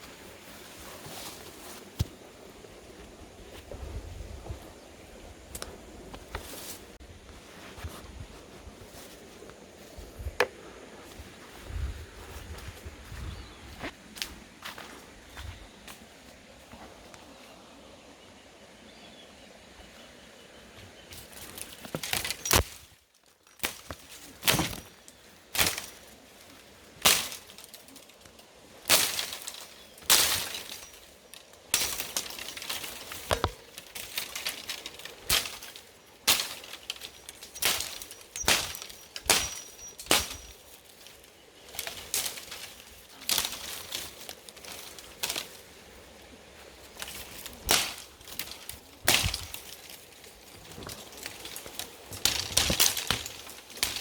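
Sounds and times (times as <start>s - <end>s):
short crunching rustling noises: 21.1s - 54.0s.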